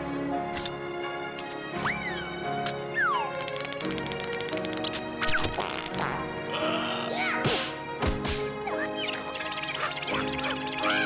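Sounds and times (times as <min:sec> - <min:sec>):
cartoon background music: 0:00.0 - 0:11.0
sharp click sound effects: 0:01.4 - 0:02.0, 0:02.6 - 0:05.6.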